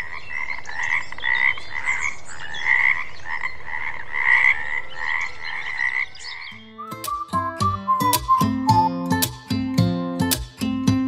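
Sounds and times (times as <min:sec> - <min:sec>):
frogs croaking: 0:00.0 - 0:07.4.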